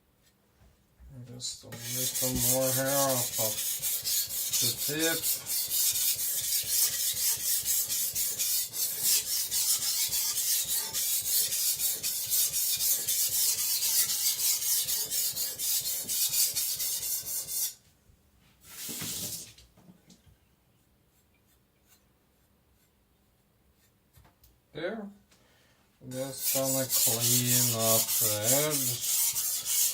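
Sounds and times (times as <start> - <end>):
cleaver scraped on whetstone: 1.7 - 17.8, 26.1 - 29.9.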